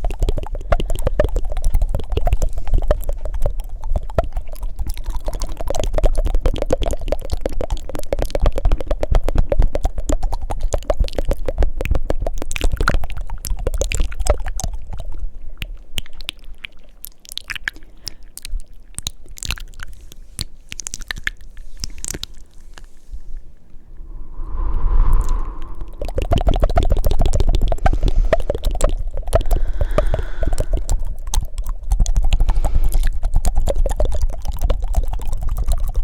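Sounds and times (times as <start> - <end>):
mouth clicks: 0.0 - 16.4, 25.2 - 36.0
wet tongue fluttering: 0.0 - 23.0, 25.2 - 36.0.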